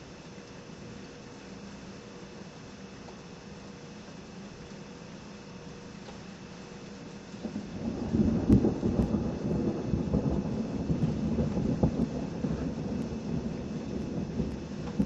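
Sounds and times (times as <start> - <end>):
steady rain: 6.0 - 15.0
thunder rumbling: 7.4 - 15.0.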